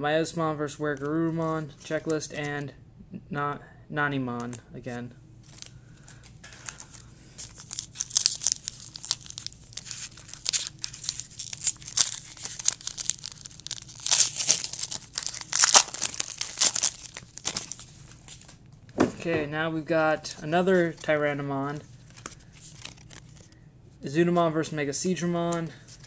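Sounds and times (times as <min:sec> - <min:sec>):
wrapper tearing and crinkling: 0:05.5 - 0:18.6, 0:22.1 - 0:23.5.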